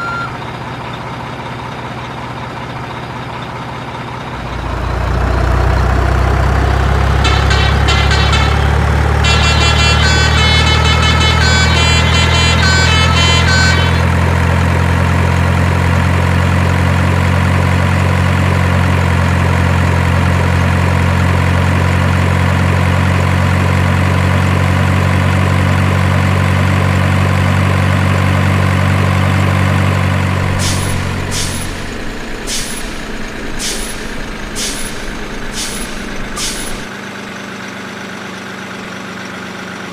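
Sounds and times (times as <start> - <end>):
truck engine drone: 0.0 - 39.9
melodic horn notes: 7.2 - 14.2
short sharp air hisses: 30.6 - 36.9.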